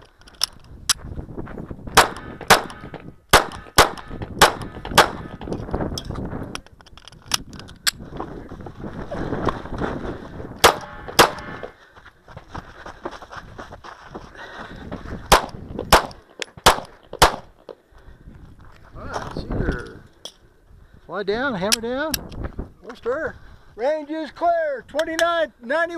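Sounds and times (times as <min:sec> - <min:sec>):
handgun shots: 0:02.0 - 0:05.4, 0:10.6 - 0:11.5, 0:15.3 - 0:17.5.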